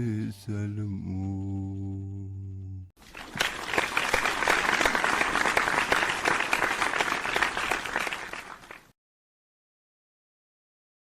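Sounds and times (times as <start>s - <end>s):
audience applauding: 3.0s - 8.9s.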